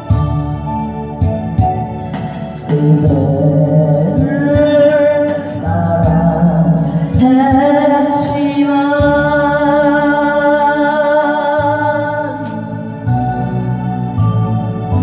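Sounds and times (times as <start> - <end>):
instrumental accompaniment: 0.0 - 15.0
person singing a ballad: 0.0 - 15.0.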